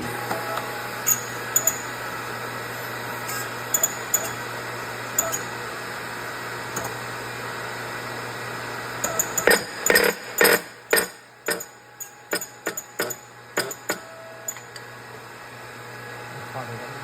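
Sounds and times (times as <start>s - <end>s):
sharp metal knocks: 9.4s - 11.7s.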